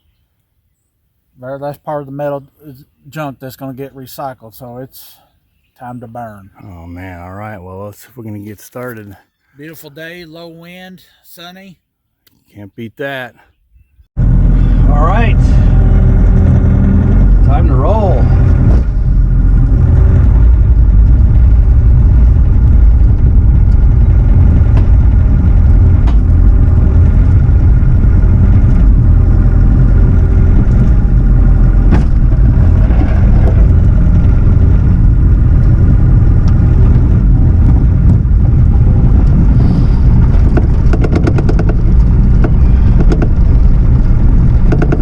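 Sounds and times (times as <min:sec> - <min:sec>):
diesel engine running: 0:14.2 - 0:45.0
fast ticking: 0:40.1 - 0:45.0
sharp metal knocks: 0:40.6 - 0:41.8, 0:44.7 - 0:45.0.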